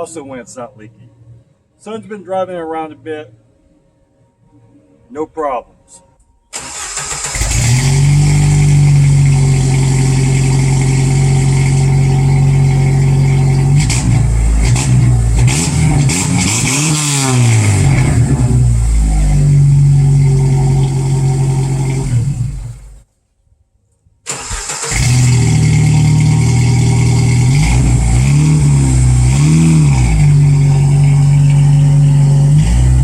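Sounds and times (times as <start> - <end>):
car engine exhaust revving: 6.6 - 23.0, 24.5 - 33.0.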